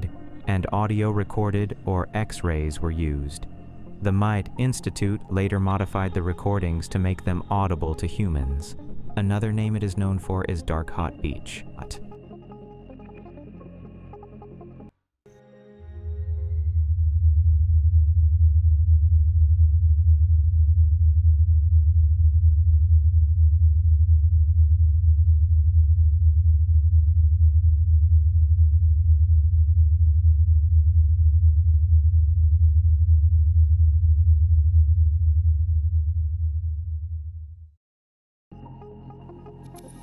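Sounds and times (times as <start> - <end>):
deep steady hum with flutter: 16.0 - 37.6.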